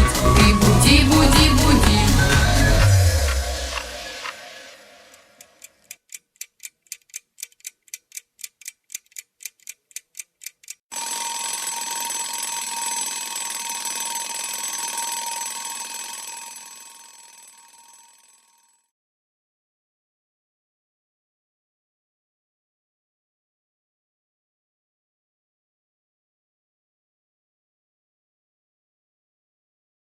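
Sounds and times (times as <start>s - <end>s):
alarm clock ticking: 0.0s - 18.7s
alarm clock ringing: 10.9s - 18.9s.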